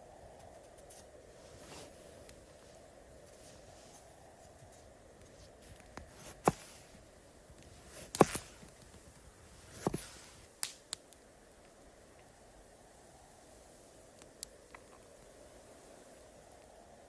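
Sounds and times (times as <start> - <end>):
low steady hiss: 0.0 - 17.0.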